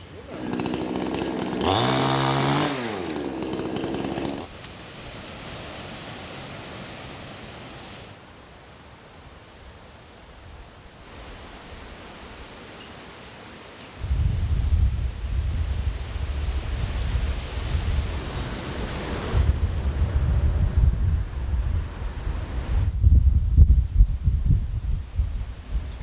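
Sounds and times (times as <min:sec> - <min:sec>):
chainsaw running at high revs: 0:00.2 - 0:04.5
wind noise: 0:14.0 - 0:26.0.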